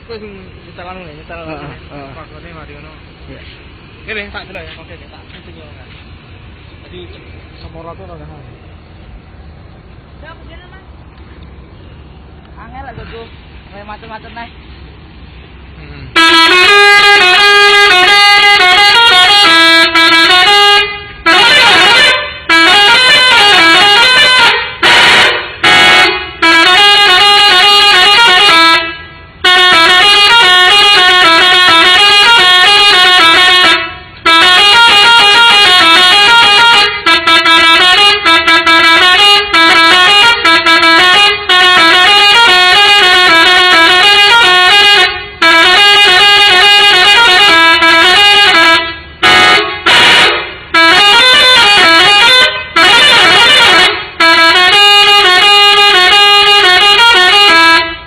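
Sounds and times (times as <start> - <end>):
bus air horn playing a tune: 15.7 - 58.0.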